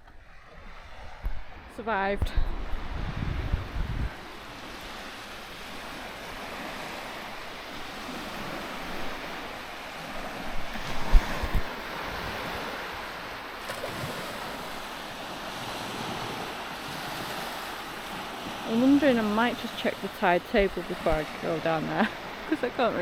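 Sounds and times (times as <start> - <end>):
surf hissing on shore: 0.2 - 23.0.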